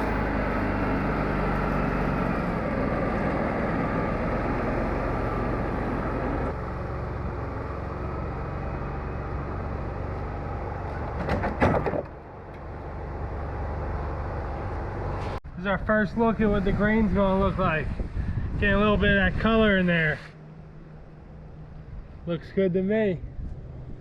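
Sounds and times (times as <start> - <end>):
engine droning: 0.0 - 24.0.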